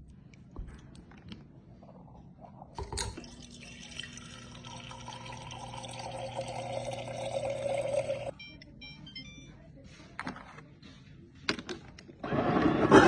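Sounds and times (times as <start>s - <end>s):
low steady hum: 0.0s - 10.6s
water running into a container: 2.8s - 8.3s.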